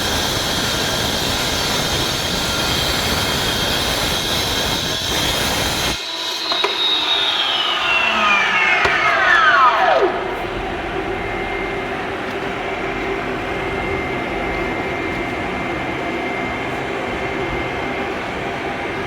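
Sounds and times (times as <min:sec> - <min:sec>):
vacuum cleaner running: 0:00.0 - 0:19.0
power cutter blade spinning down: 0:04.8 - 0:11.6.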